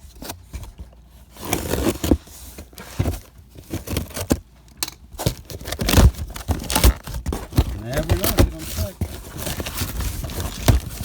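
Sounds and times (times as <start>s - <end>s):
packaging being handled: 5.2s - 11.0s.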